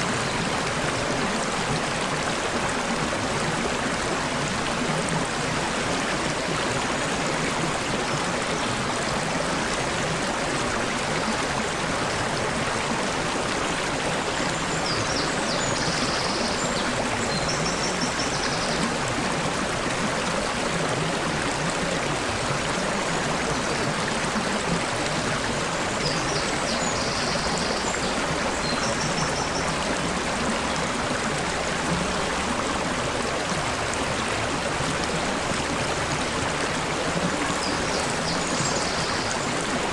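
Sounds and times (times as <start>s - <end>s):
stream babbling over rocks: 0.0s - 39.9s.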